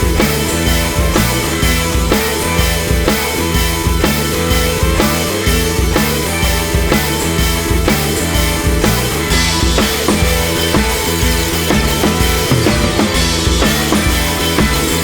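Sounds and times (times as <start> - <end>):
rock music: 0.0 - 15.0
steady drum beat: 0.0 - 15.0.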